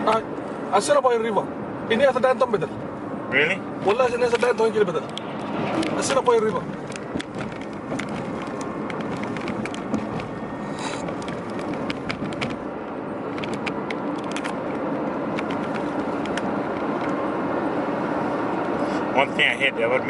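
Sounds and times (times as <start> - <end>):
car road and engine noise: 0.0 - 20.0
light clicks and rattles: 4.3 - 12.6, 13.3 - 17.2.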